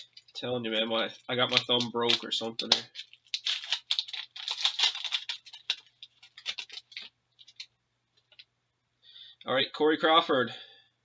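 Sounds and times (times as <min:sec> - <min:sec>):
wrapper crinkling and scratching: 0:00.0 - 0:08.4.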